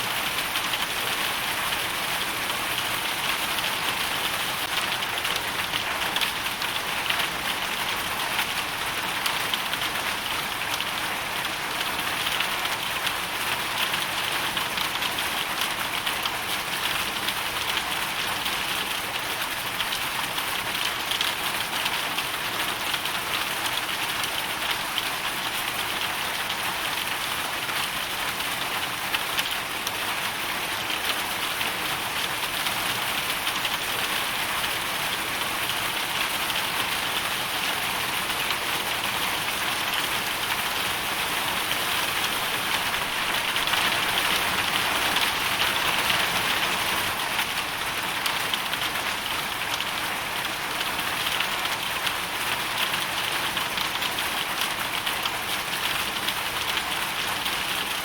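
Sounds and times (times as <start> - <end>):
hail and rain falling: 0.1 - 58.0.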